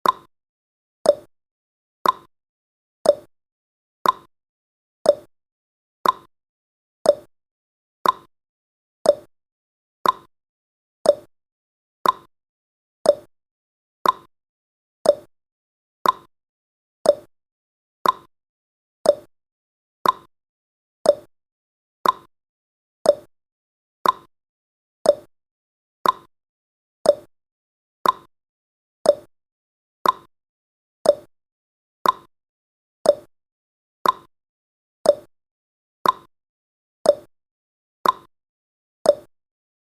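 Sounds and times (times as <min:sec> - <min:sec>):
timer ticking: 0:00.0 - 0:00.3, 0:01.1 - 0:01.3, 0:02.0 - 0:02.3, 0:03.0 - 0:03.3, 0:04.0 - 0:04.3, 0:05.1 - 0:05.3, 0:06.0 - 0:06.3, 0:07.0 - 0:07.3, 0:08.0 - 0:08.3, 0:09.0 - 0:09.3, 0:10.0 - 0:10.3, 0:11.0 - 0:11.3, 0:12.0 - 0:12.3, 0:13.0 - 0:13.3, 0:14.0 - 0:14.3, 0:15.0 - 0:15.3, 0:16.0 - 0:16.3, 0:17.0 - 0:17.3, 0:18.0 - 0:18.3, 0:19.0 - 0:19.3, 0:20.0 - 0:20.3, 0:21.0 - 0:21.3, 0:22.0 - 0:22.3, 0:23.0 - 0:23.3, 0:24.0 - 0:24.3, 0:25.0 - 0:25.3, 0:26.0 - 0:26.3, 0:27.0 - 0:27.3, 0:28.0 - 0:28.3, 0:29.0 - 0:29.3, 0:30.0 - 0:30.3, 0:31.0 - 0:31.3, 0:32.0 - 0:32.3, 0:33.0 - 0:33.3, 0:34.0 - 0:34.3, 0:35.0 - 0:35.3, 0:36.0 - 0:36.3, 0:37.1 - 0:37.3, 0:38.0 - 0:38.3, 0:39.1 - 0:39.3.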